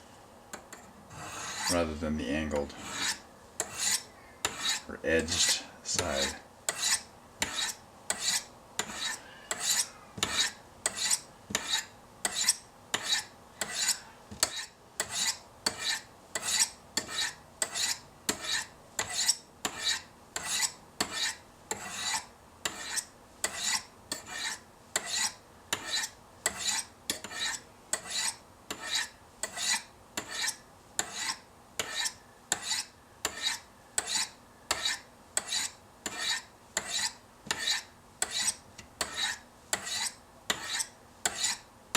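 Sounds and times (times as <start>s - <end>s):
knife scraping on ceramic stones: 0.6s - 41.7s.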